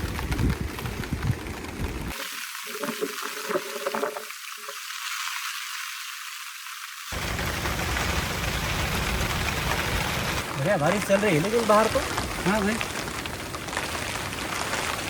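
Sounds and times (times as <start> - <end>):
heavy rain falling: 7.1 - 15.0.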